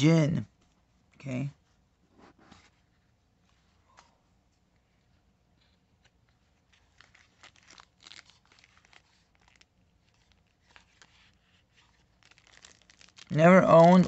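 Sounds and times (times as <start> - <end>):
packaging crinkling: 6.5 - 14.0.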